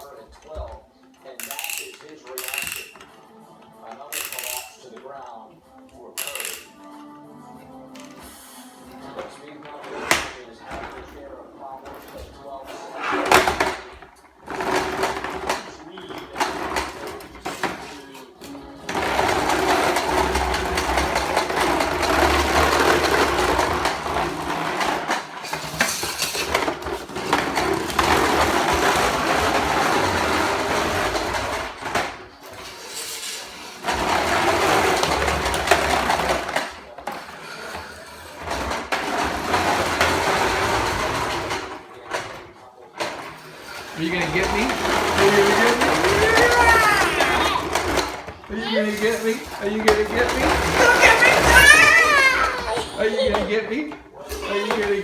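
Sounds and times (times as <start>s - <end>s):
toy music: 1.4s - 4.9s, 6.1s - 7.1s
toy lawnmower buzzing: 13.2s - 17.9s, 18.6s - 41.8s, 43.6s - 53.5s.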